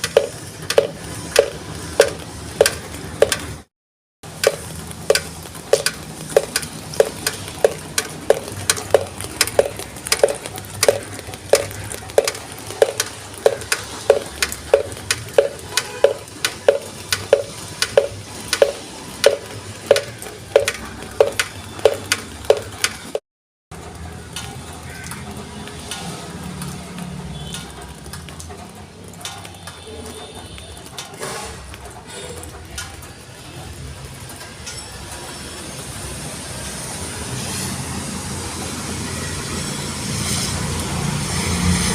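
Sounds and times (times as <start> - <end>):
water drips plinking into vessel: 0.0 - 3.4, 4.4 - 23.2
steady rain: 0.0 - 22.6, 23.7 - 41.9.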